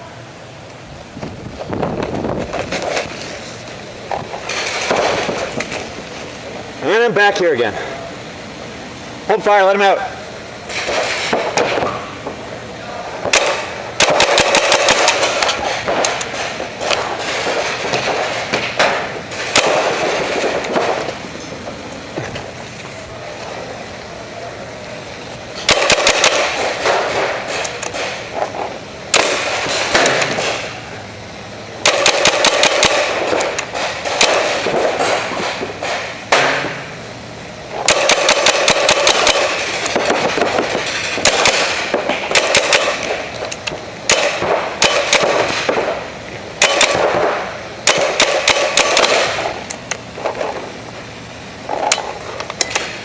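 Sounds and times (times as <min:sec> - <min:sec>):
paintball markers firing: 0:29.2 - 0:30.7, 0:37.8 - 0:45.9, 0:46.6 - 0:49.6.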